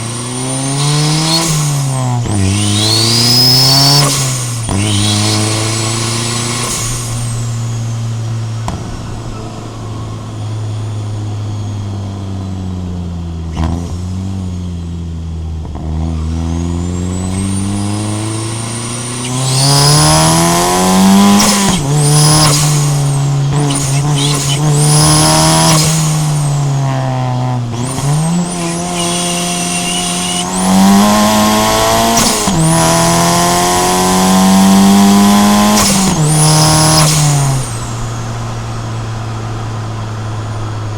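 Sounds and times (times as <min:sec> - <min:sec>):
car engine revving: 0:00.0 - 0:40.9
turbo whistle: 0:00.5 - 0:07.8, 0:16.2 - 0:26.9, 0:27.8 - 0:34.2.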